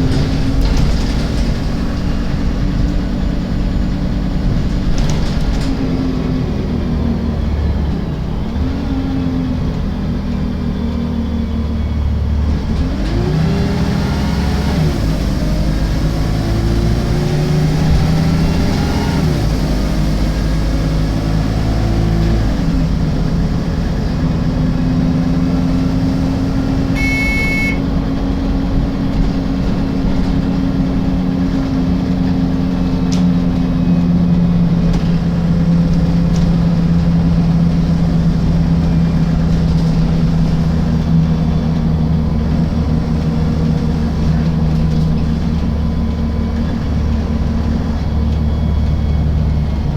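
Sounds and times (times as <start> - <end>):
bus diesel engine accelerating: 0.0 - 49.9
short high tone: 26.9 - 27.9.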